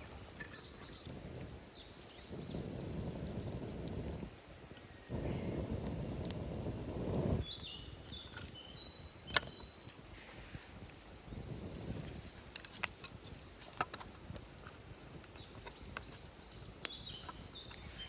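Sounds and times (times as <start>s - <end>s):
low rumbling noise: 0.9s - 7.5s.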